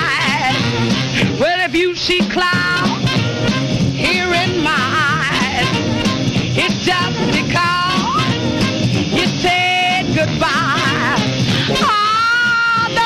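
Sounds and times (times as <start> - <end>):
rhythm and blues band playing: 0.0 - 13.0.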